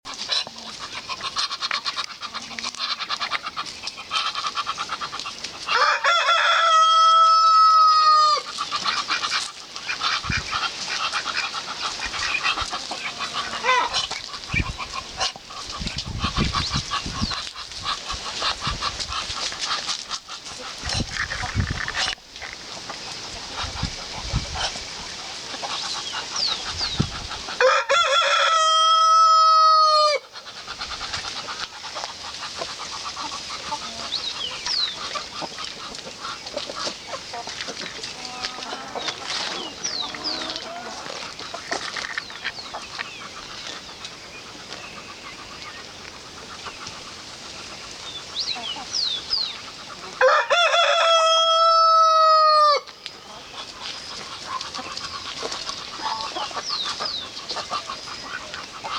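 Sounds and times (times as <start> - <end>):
rooster crowing: 5.7 - 8.5, 27.6 - 30.3, 50.2 - 52.9.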